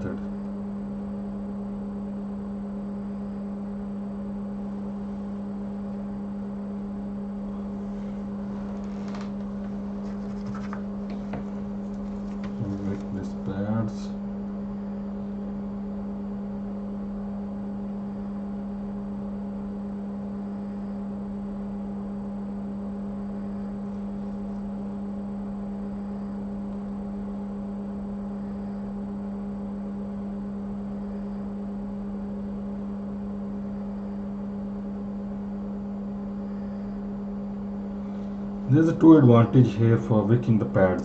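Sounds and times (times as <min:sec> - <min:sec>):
electrical hum: 0:00.0 - 0:41.0.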